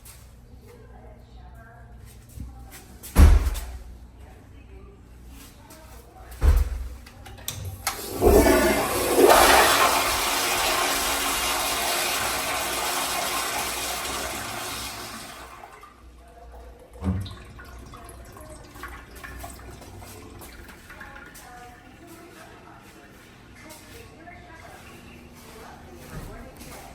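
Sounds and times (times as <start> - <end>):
toilet flushing: 7.6 - 22.1.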